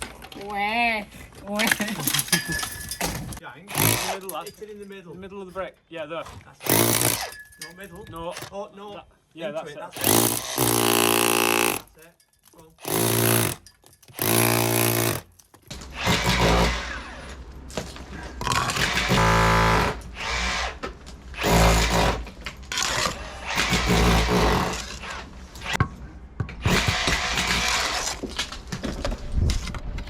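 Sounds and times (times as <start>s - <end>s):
power drill boring into brick: 3.7s - 4.4s, 6.6s - 7.4s, 8.3s - 8.5s, 9.9s - 11.9s, 12.8s - 15.3s, 15.9s - 17.2s, 18.5s - 20.8s, 21.4s - 25.8s, 26.6s - 28.3s.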